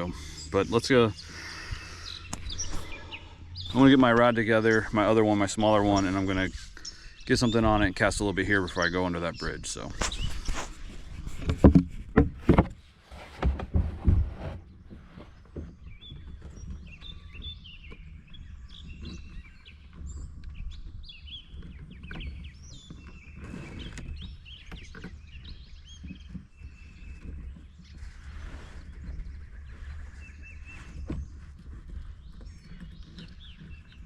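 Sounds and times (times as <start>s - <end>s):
birds chirping and singing: 0.0s - 11.8s, 14.7s - 34.0s
low background rumble: 0.0s - 12.5s.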